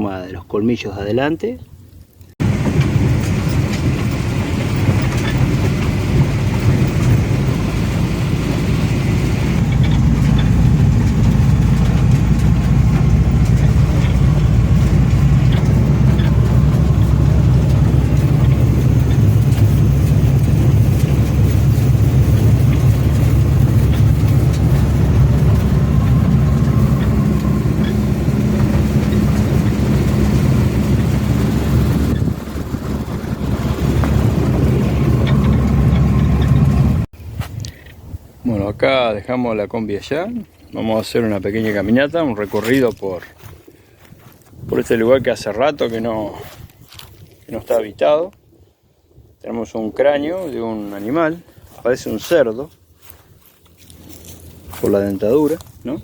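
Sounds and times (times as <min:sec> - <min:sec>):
road noise: 0:01.8 - 0:48.4, 0:49.5 - 0:56.0
van engine: 0:02.3 - 0:37.1, 0:50.4 - 0:56.0.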